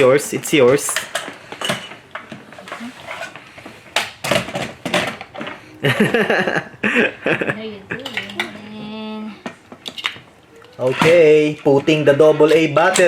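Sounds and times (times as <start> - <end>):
person speaking: 6.9 - 9.5.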